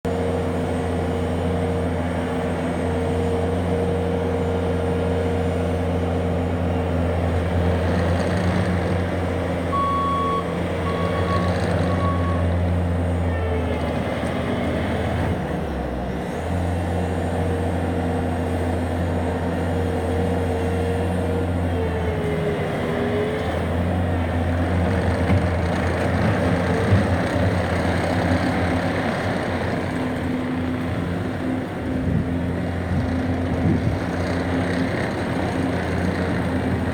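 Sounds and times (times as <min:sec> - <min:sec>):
diesel engine running: 0:00.0 - 0:36.9
backup alarm beeps: 0:09.7 - 0:12.4.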